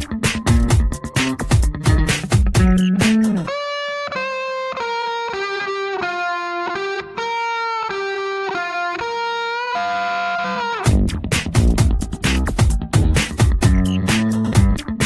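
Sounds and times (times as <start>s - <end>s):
band playing: 0.0s - 3.6s.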